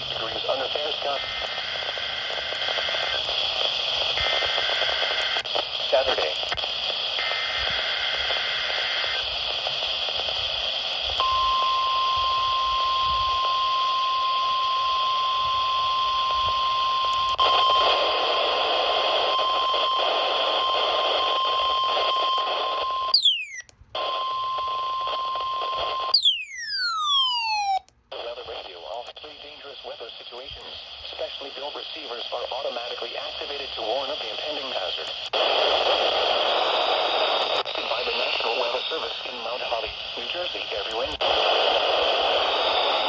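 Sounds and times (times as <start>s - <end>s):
radio static: 0.0s - 11.3s, 17.2s - 24.2s, 25.0s - 43.0s
steady warning alarm tone: 22.8s - 27.8s
warbling data bursts: 23.2s - 23.7s, 26.2s - 27.8s.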